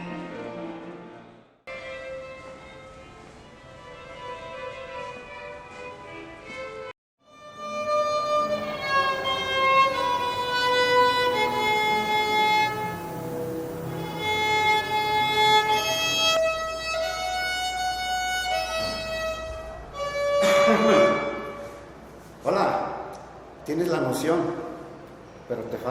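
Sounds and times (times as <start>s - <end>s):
solo violin slow melody: 7.2s - 21.9s.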